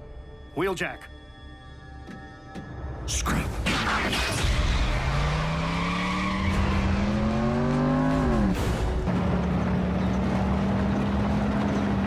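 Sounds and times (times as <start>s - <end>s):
animated vehicle engine: 3.6s - 12.0s.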